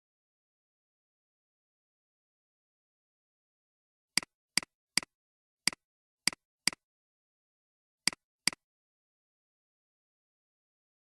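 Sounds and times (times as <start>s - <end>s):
computer mouse clicks: 5.7s - 6.8s, 8.1s - 8.6s.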